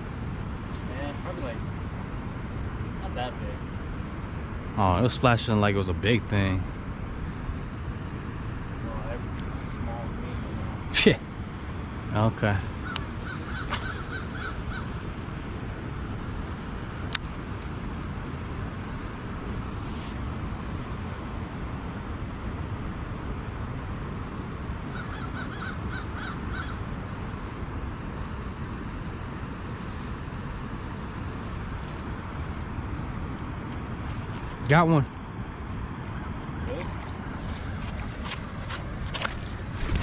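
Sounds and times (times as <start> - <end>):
steady outdoor hiss: 0.0 - 40.0
bird calling: 12.8 - 15.0.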